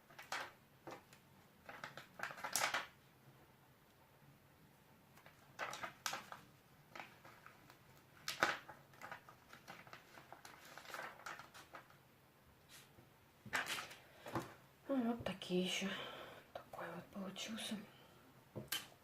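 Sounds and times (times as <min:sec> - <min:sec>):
rustles and taps of craft work: 0:00.0 - 0:03.0, 0:12.7 - 0:15.4, 0:18.5 - 0:19.0.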